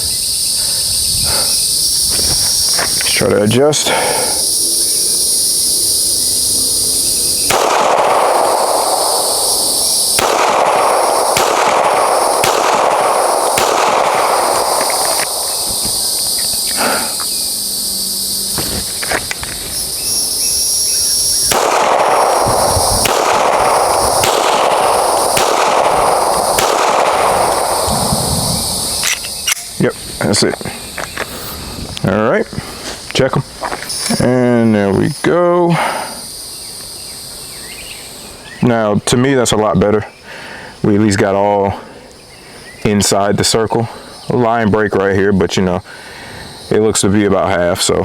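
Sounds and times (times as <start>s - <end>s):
high insect buzz: 0.0s - 38.6s
pistol shots: 7.3s - 17.0s, 21.4s - 29.7s.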